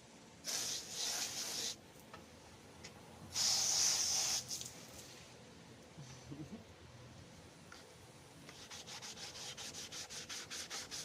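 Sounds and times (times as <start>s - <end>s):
sandpaper rubbing on painted surface: 0.5s - 1.8s, 8.5s - 11.0s.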